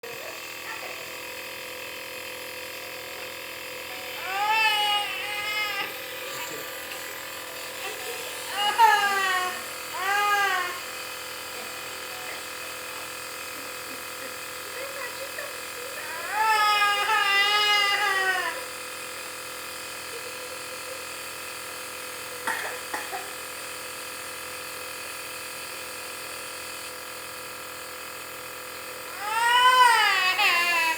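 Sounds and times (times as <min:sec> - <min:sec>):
nebulizer compressor humming: 0:00.0 - 0:30.9
baby crying: 0:04.1 - 0:06.6, 0:07.8 - 0:10.9, 0:16.0 - 0:18.7, 0:29.1 - 0:30.9.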